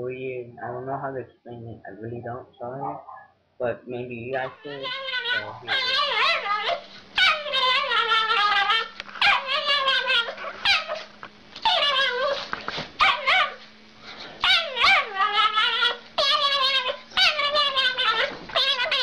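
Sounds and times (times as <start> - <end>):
dog making drawn-out calls: 4.7 - 12.4, 14.4 - 19.0.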